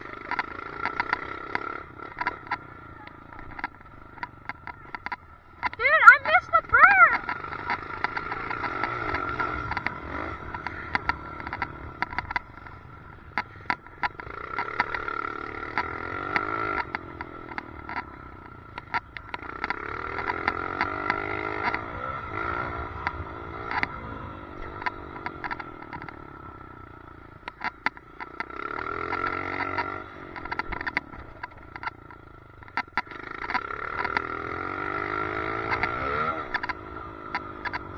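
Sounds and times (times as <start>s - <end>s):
dirt bike engine revving: 5.6s - 27.0s, 27.6s - 37.9s
sharp clicks: 35.7s - 37.9s.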